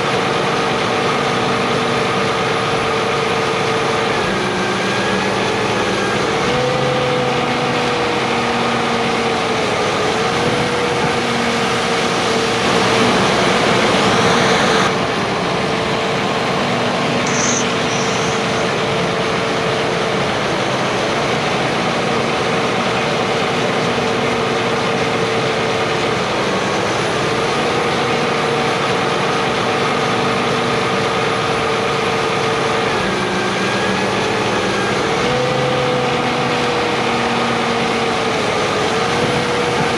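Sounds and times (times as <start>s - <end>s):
diesel machinery running: 0.0s - 39.9s
brief high chirp: 17.2s - 18.9s
louder rush: 17.2s - 19.7s.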